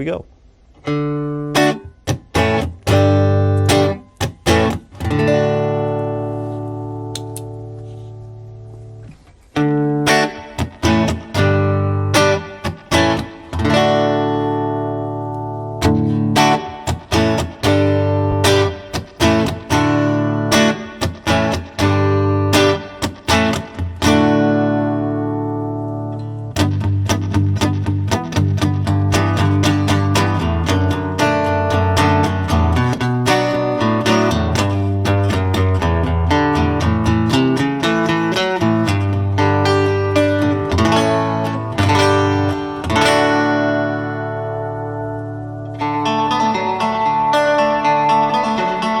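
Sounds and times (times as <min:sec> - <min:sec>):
guitar chords with reverb: 0:00.7 - 0:49.0.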